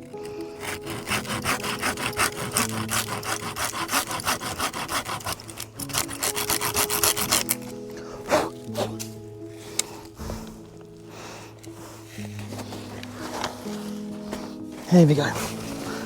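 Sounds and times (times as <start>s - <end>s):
rasping strokes on wood: 0.0s - 9.1s.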